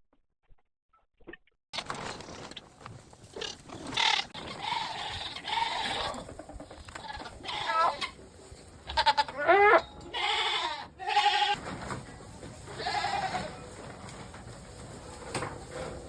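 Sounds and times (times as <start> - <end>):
goats bleating: 3.4 - 8.2, 8.8 - 11.6, 12.7 - 13.7
shuffling and knocking: 11.6 - 16.0.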